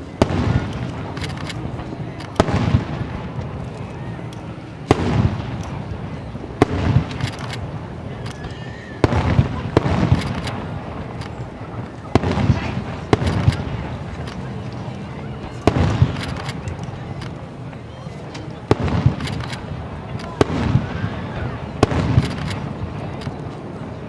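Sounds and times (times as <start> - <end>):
firework shells bursting: 6.5 - 14.6, 18.4 - 23.6.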